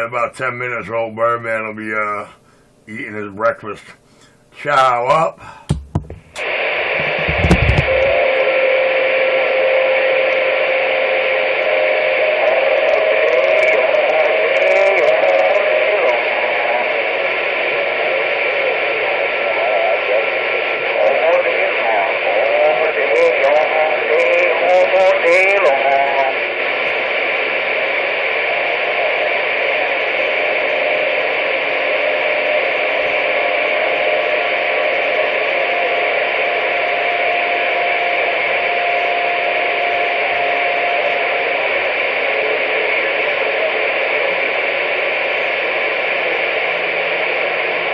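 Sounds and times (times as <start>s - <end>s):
radio static hiss: 0.0s - 47.9s
low thump: 7.0s - 8.2s.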